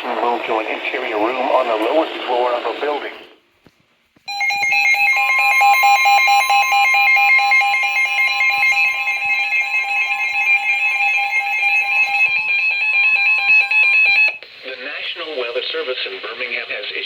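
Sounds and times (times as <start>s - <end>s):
electronic alert tone: 4.3s - 14.4s.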